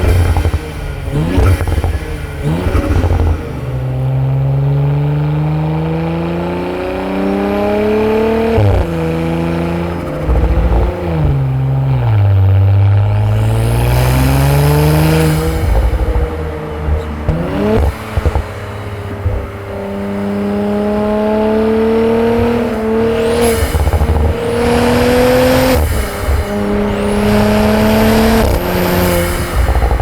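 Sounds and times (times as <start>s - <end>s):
car engine revving: 0.0s - 30.0s.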